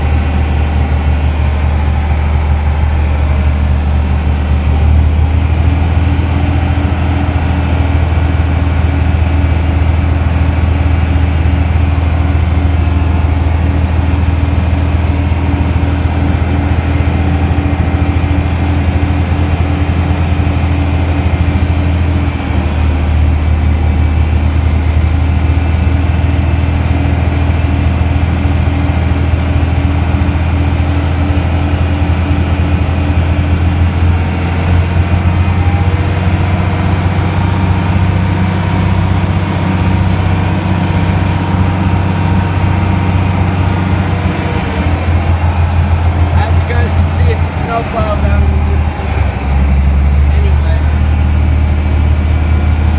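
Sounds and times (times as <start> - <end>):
heavy vehicle engine running: 0.0 - 52.9.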